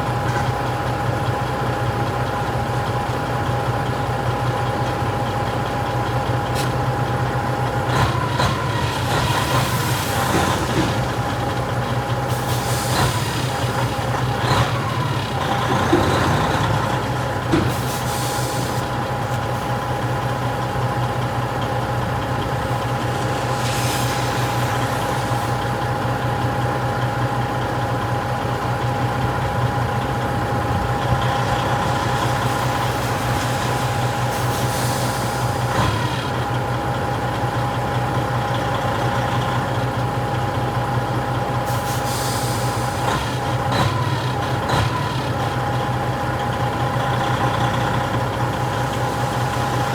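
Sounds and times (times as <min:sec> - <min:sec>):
diesel truck engine running: 0:00.0 - 0:49.9
air brake hisses: 0:12.2 - 0:14.2, 0:17.6 - 0:19.7, 0:22.6 - 0:26.2, 0:31.7 - 0:36.0, 0:41.6 - 0:43.4, 0:48.5 - 0:49.9.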